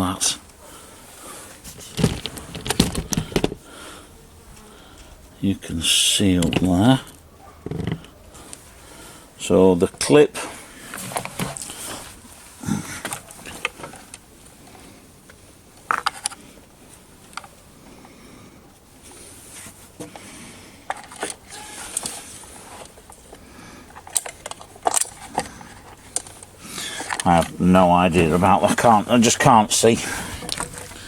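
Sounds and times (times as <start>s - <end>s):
hands handling plastic parts: 1.5s - 3.7s, 10.9s - 12.2s, 15.3s - 16.4s, 20.9s - 31.0s
plastic parts clicking and knocking: 1.7s - 3.6s, 7.6s - 8.1s, 15.9s - 16.4s, 23.9s - 27.6s, 30.4s - 31.0s.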